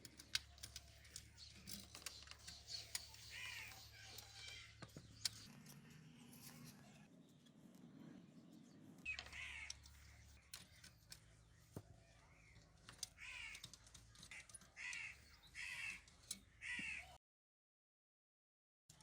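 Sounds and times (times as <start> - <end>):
harsh bird cawing: 0.6 - 5.5, 9.0 - 10.8, 12.4 - 17.2.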